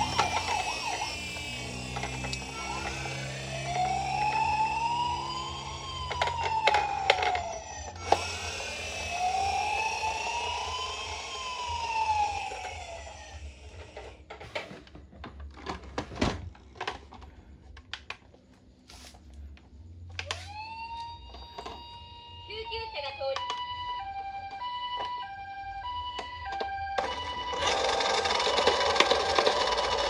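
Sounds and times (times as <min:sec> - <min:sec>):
toy ambulance siren wailing: 0:00.0 - 0:14.0, 0:20.2 - 0:30.0.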